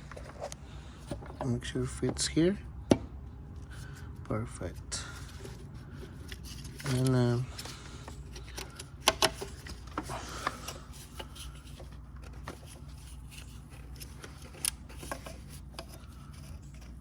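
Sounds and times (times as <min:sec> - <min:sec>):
steady low hum: 0:00.0 - 0:17.0
clicks and taps of parts handled: 0:08.4 - 0:10.0.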